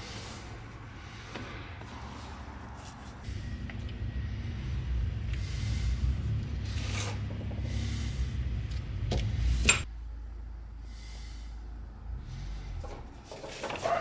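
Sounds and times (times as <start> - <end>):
cloth rubbing metal parts: 2.0 - 9.9
low hum: 3.3 - 12.8.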